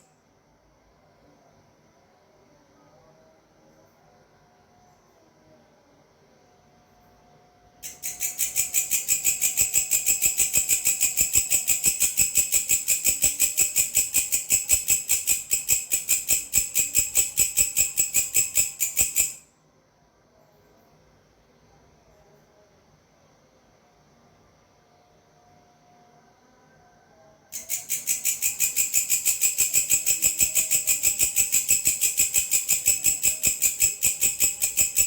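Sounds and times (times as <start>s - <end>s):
grasshopper stridulating: 7.8s - 19.4s, 27.6s - 35.0s.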